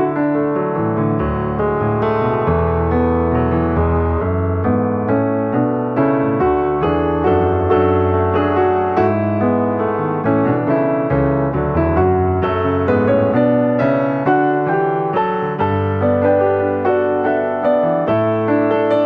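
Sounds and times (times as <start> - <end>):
piano music: 0.0 - 19.0.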